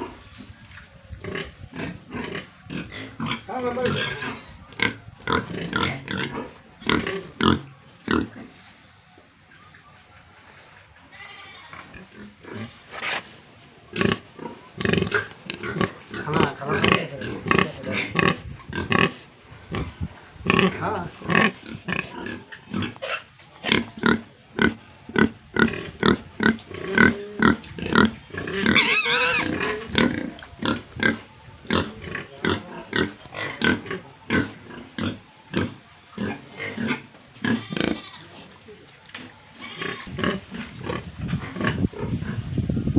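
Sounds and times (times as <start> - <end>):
pigs grunting: 1.0 - 8.6, 11.8 - 42.6
pig squealing: 26.1 - 38.5, 39.4 - 40.5.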